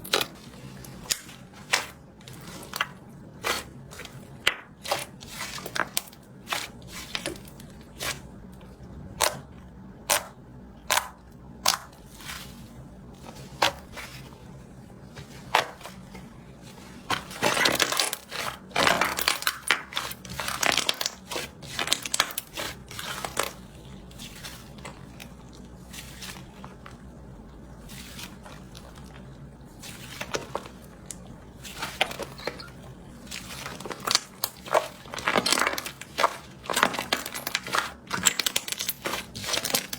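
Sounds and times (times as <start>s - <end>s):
slime crackling: 10.9s - 39.9s.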